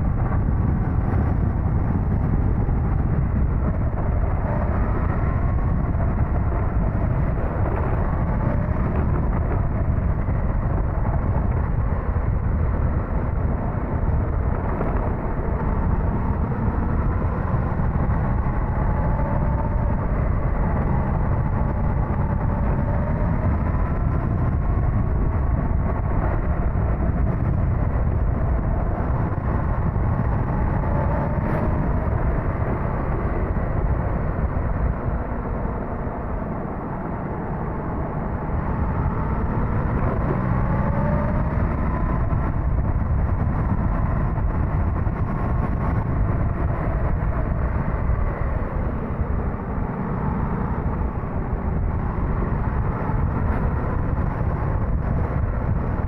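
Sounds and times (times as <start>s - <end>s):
wind rush on microphone: 0.0s - 56.0s.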